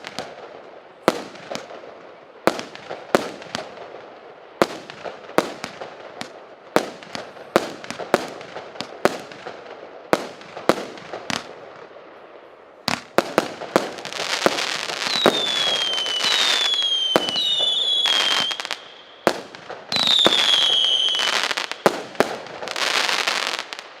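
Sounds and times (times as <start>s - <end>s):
firework shots: 0.0s - 12.0s, 12.8s - 24.0s
crackling hiss of fireworks: 0.0s - 24.0s
whistling firework tails: 13.8s - 23.8s.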